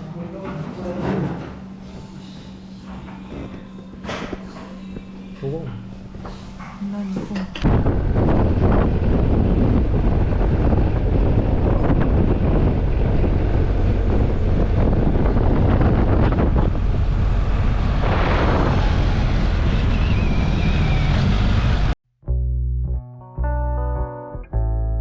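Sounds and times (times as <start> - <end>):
motorcycle low rumble: 7.3 - 23.8
wind rushing over microphone: 7.6 - 22.0
guitar music: 22.2 - 25.0.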